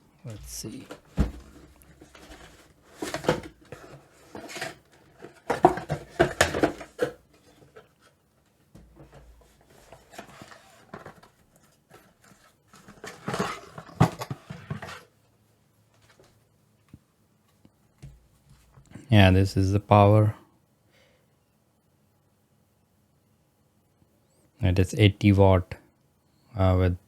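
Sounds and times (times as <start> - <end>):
packaging rustling and crinkling: 0.3 - 8.2, 9.0 - 15.1
knocks on box: 1.2 - 1.6.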